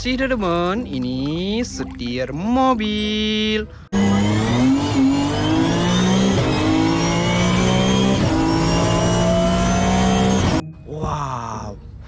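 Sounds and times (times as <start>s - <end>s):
car engine accelerating: 3.9s - 10.6s.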